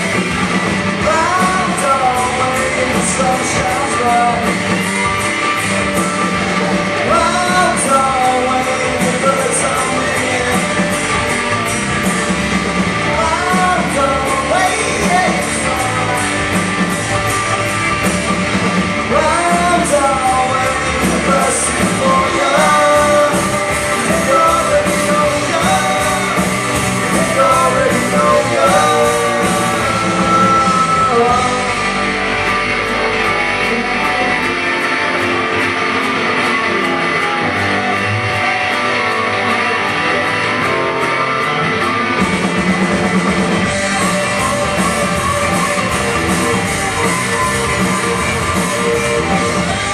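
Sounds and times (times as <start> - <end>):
rock band playing: 0.0 - 49.9
person singing: 0.9 - 4.9, 6.8 - 11.3, 13.0 - 17.0, 19.1 - 38.3.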